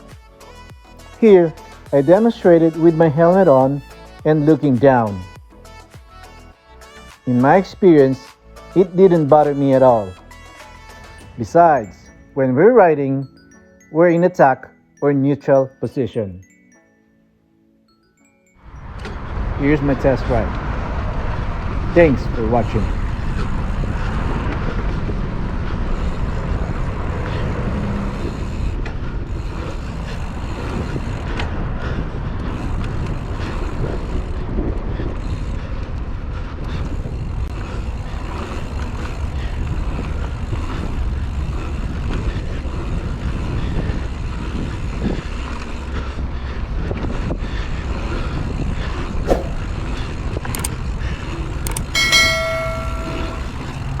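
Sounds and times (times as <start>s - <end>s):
wind: 0.0s - 16.6s, 17.8s - 54.0s
bike trail rumble: 18.7s - 54.0s.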